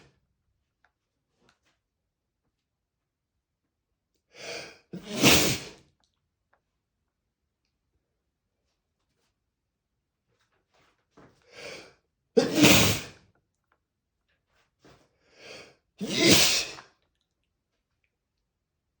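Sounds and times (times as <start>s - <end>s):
person sneezing: 4.4s - 5.8s, 11.6s - 13.2s, 15.4s - 16.9s
short catching breaths: 11.4s - 12.0s, 15.0s - 16.8s.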